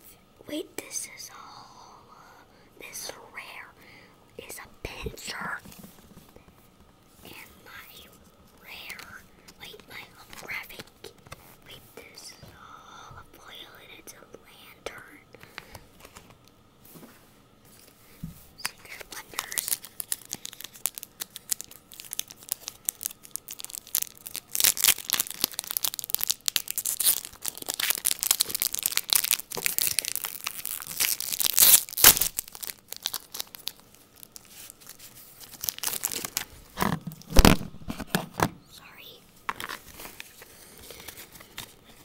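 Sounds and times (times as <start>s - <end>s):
foil wrapper crinkling: 18.6s - 37.6s.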